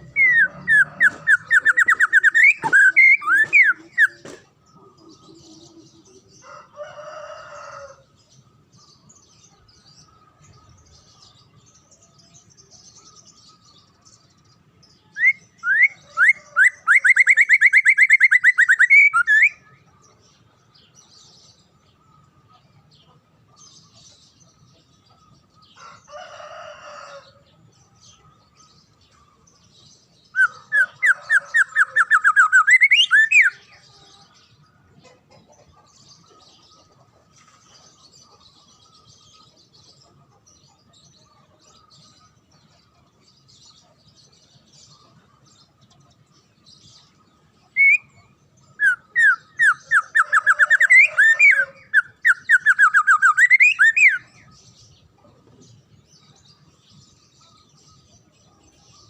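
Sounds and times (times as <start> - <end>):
songbird harsh rasping call: 0.0 - 4.4, 30.4 - 33.8, 48.8 - 54.4
songbird whistled notes: 0.1 - 4.4, 15.2 - 19.6, 47.8 - 48.2, 48.8 - 54.3.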